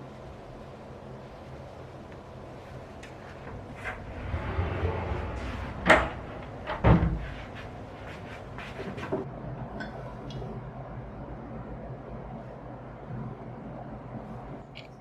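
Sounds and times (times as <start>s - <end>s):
low rumble: 3.8s - 7.2s
knocks and clunks: 5.7s - 7.4s.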